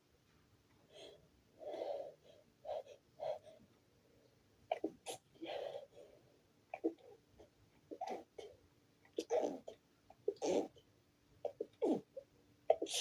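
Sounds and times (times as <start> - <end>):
person sneezing: 12.8 - 13.0.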